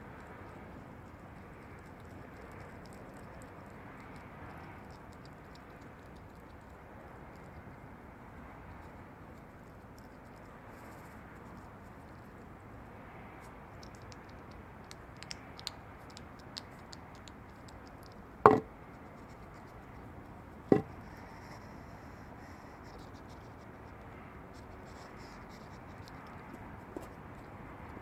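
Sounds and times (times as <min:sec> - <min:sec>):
hedgehog feeding scratching and clicks: 0:00.0 - 0:28.0
sharp knocks: 0:18.5 - 0:18.7, 0:20.7 - 0:21.0.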